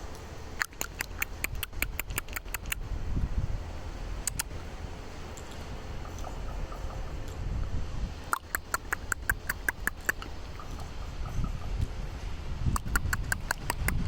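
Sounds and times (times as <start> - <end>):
raven clicking: 0.1 - 2.9, 4.2 - 4.6, 8.3 - 10.9, 12.7 - 14.0
low rumble: 1.4 - 8.3.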